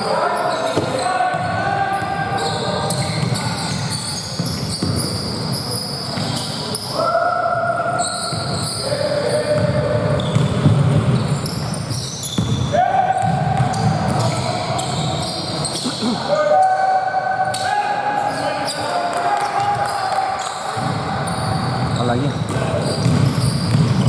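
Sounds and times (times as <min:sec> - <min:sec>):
sneakers squeaking: 0:00.0 - 0:07.1, 0:07.7 - 0:16.8, 0:17.4 - 0:24.0
basketball bouncing on court: 0:02.9 - 0:06.5, 0:09.4 - 0:15.1, 0:20.7 - 0:24.0
players calling out: 0:12.7 - 0:23.0.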